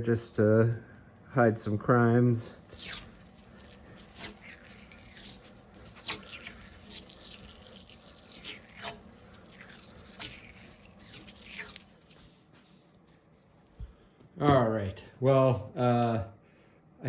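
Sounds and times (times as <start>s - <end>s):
tape ripping off roll: 2.5s - 12.3s.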